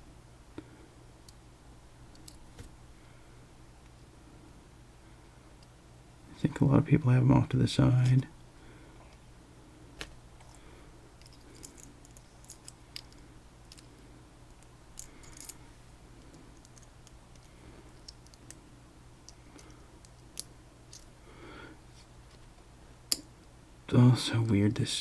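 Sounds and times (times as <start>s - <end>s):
low steady hum: 0.0s - 25.0s
small metal parts clicking: 11.2s - 13.9s, 14.6s - 15.6s.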